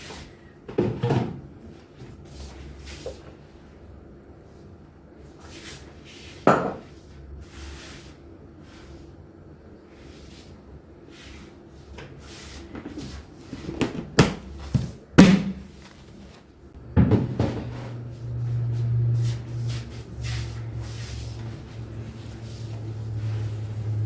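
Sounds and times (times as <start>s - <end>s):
steady low hum: 14.6s - 24.0s
cupboard doors and cookware banging: 16.9s - 17.8s.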